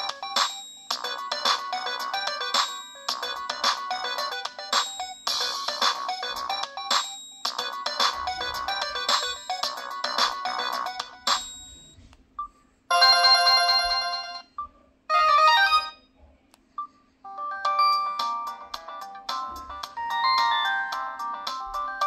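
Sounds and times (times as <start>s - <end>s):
phone ringtones: 0.0s - 12.0s, 12.9s - 16.0s.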